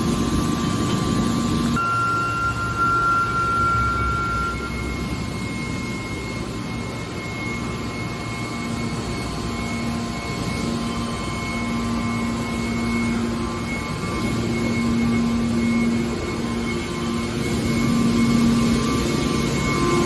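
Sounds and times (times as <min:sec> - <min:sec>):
machine drone with low hum: 0:00.0 - 0:20.0
thin high whine: 0:00.0 - 0:20.0.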